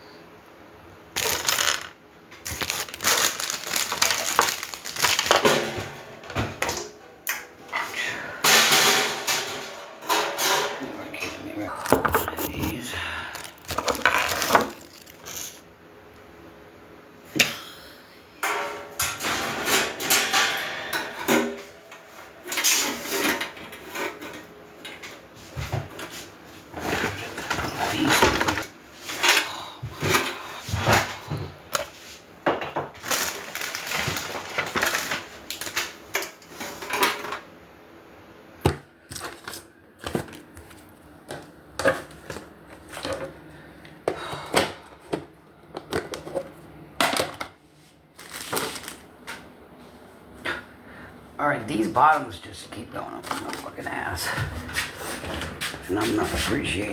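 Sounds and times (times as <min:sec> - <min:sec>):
grill parts clattering: 0:08.4 - 0:11.0, 0:18.4 - 0:21.6.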